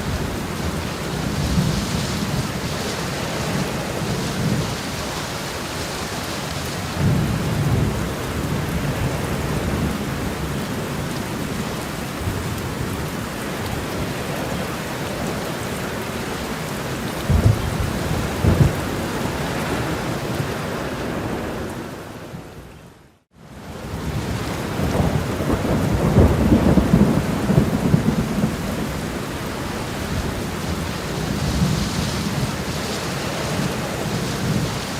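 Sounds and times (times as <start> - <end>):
steady rain: 0.0 - 34.9
thunder rumbling: 6.9 - 22.6, 23.9 - 34.9.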